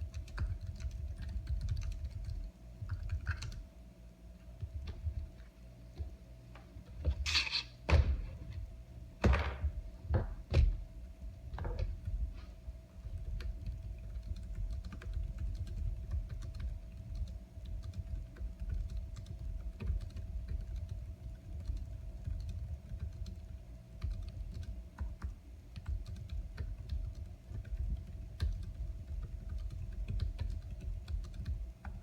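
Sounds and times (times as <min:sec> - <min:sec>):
keyboard heavy thumps: 0:09.2 - 0:12.3.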